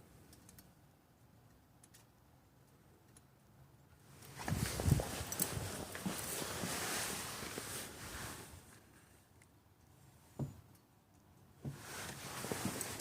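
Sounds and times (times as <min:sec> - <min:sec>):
steady hiss from car: 0:04.0 - 0:09.3, 0:11.6 - 0:13.0.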